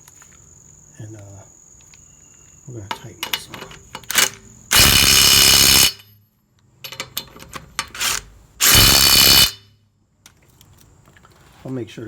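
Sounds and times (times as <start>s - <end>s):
sharp clicks and knocks: 2.9s - 4.5s
impact wrench hammering: 4.7s - 6.0s, 8.6s - 9.6s.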